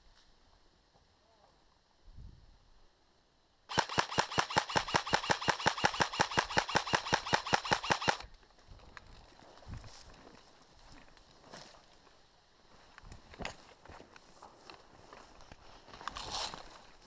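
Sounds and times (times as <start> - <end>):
airsoft rifle full-auto burst: 3.7 - 8.3.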